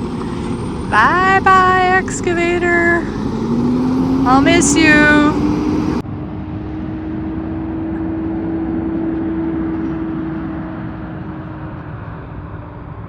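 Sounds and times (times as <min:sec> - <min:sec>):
vehicle engine humming: 0:00.0 - 0:06.0, 0:06.6 - 0:13.0.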